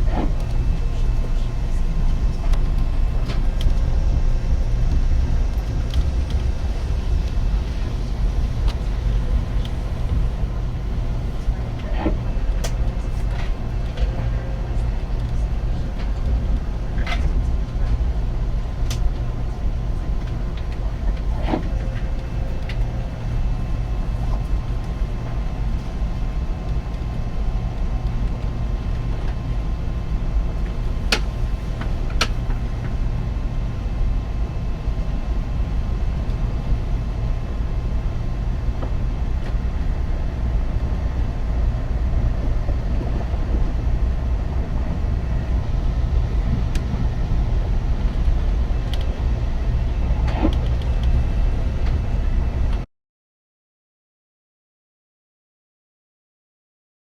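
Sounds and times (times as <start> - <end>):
train rumbling: 0.0 - 52.9.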